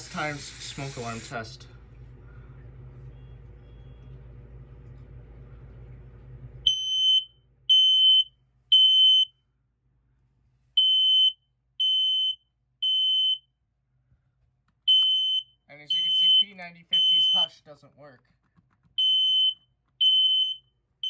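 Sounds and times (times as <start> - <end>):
faint low hum: 0.5 - 11.2
smoke alarm beeping: 6.7 - 9.4, 10.8 - 13.5, 14.9 - 17.5, 19.0 - 20.6.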